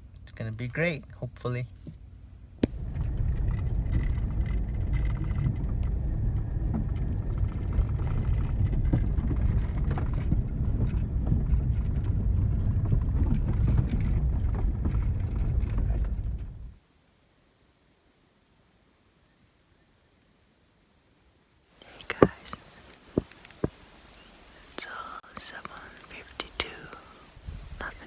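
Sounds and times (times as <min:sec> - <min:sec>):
vehicle low rumble: 0:00.0 - 0:16.8, 0:21.8 - 0:28.0
small rattles and knocks: 0:02.6 - 0:16.8, 0:21.8 - 0:23.8.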